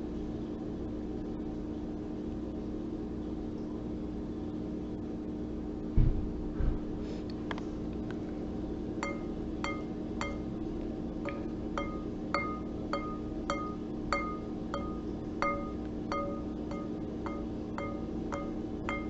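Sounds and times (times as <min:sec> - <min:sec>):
low steady hum: 0:00.0 - 0:19.0
tapping on glass: 0:09.0 - 0:10.5, 0:11.3 - 0:19.0.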